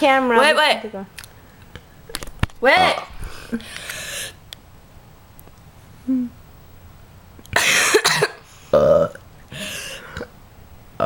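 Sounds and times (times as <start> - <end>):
girl coughing: 7.6 - 8.4.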